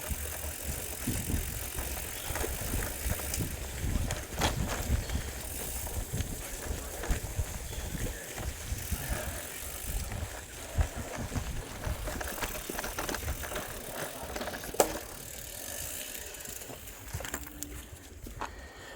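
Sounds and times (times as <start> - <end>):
wind buffeting microphone: 0.0 - 13.8
bicycle rattling and clicking: 0.0 - 18.8.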